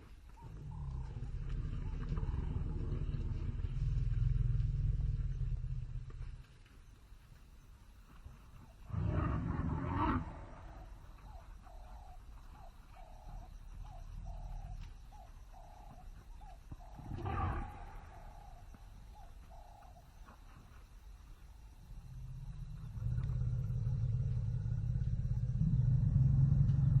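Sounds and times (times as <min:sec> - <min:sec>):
low rumble: 0:00.7 - 0:06.5, 0:21.8 - 0:27.0
elephant roaring: 0:08.9 - 0:10.9, 0:17.0 - 0:18.6.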